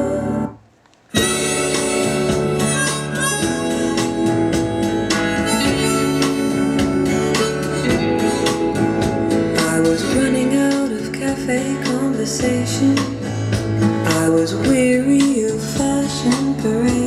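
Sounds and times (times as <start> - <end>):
plucked guitar: 0.0 - 17.0
steady bass: 0.0 - 17.0
lead melody: 1.2 - 14.1.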